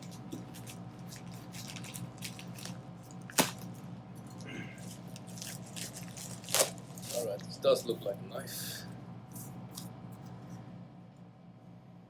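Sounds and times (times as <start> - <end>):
packaging rustling and crinkling: 0.0 - 7.5
steady low hum: 0.0 - 12.0.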